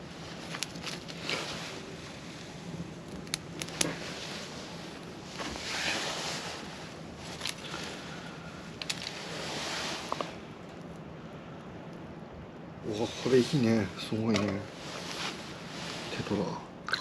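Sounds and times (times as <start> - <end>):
wood fire crackling: 0.0 - 16.6.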